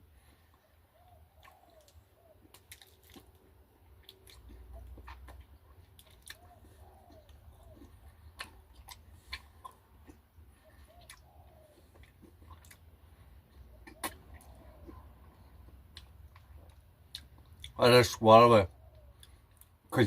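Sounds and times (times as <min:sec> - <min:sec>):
faint chewing: 0:00.1 - 0:17.8, 0:18.7 - 0:20.0
soft mouth clicks: 0:13.8 - 0:17.8.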